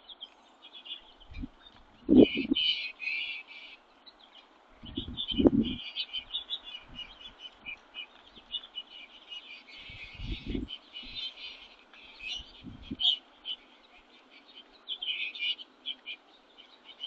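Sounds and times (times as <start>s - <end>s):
songbirds chirping and twittering: 0.0s - 17.0s.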